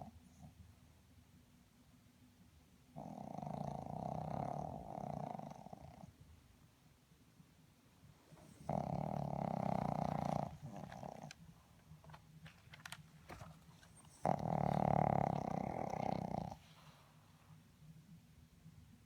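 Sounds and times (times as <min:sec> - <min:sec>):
dog snoring: 0:02.9 - 0:06.2, 0:08.4 - 0:11.4, 0:13.7 - 0:17.1.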